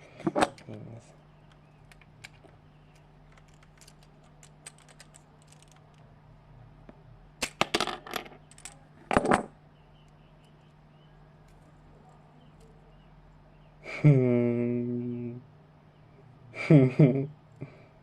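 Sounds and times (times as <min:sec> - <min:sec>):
small plastic parts clicking: 0:01.5 - 0:06.1.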